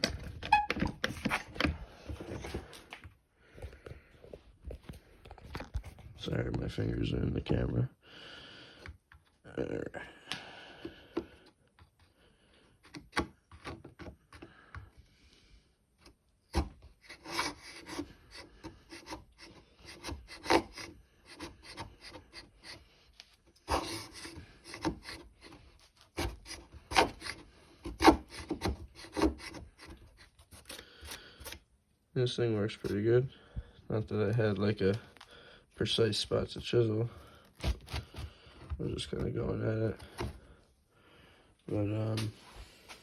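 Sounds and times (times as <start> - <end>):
chisel blade scraping wood: 16.5 - 22.9, 23.6 - 31.6, 37.3 - 39.0.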